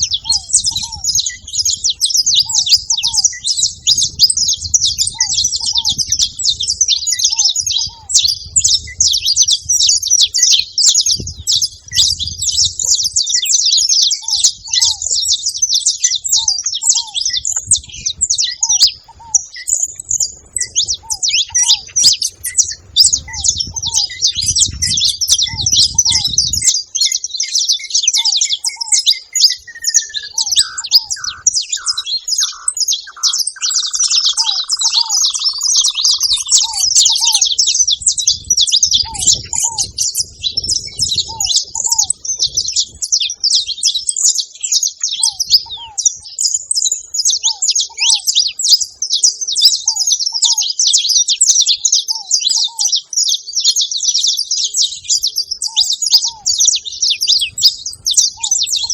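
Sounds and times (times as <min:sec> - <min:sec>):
finches chirping and chattering: 0:00.0 - 0:58.9.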